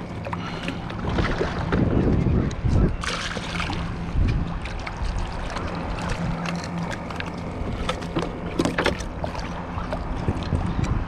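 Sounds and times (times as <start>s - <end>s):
water slapping against hull: 0.0s - 11.0s
wind: 0.0s - 11.0s
small splashes: 3.0s - 10.6s.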